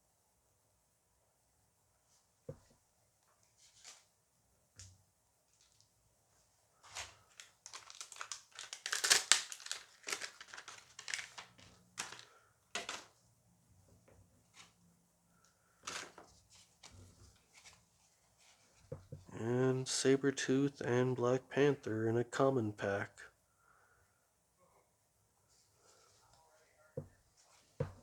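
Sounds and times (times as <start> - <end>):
wrapper crinkling and tearing: 6.8 - 13.1, 15.9 - 16.2.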